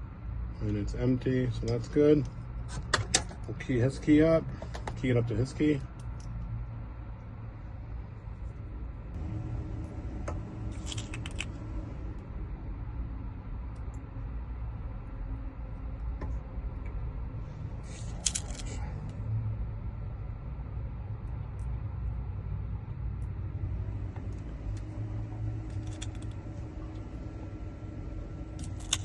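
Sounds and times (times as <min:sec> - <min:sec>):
steady low rumble: 0:03.5 - 0:29.0
metal lock pins clinking: 0:18.0 - 0:18.8, 0:25.6 - 0:27.0, 0:28.6 - 0:29.0.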